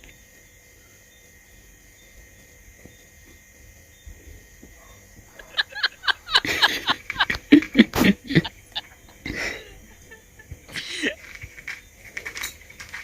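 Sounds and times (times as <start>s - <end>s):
person laughing: 5.3s - 11.3s.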